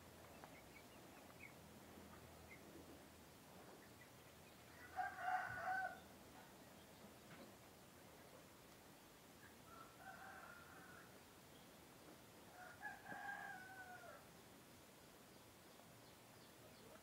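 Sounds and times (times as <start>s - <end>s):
rooster crowing: 4.8s - 6.0s, 9.7s - 11.1s, 12.5s - 14.2s.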